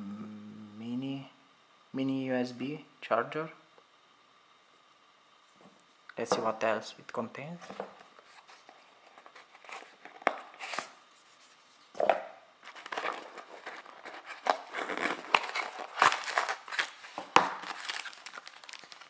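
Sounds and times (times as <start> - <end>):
packaging crinkling and crackling: 12.6 - 19.0.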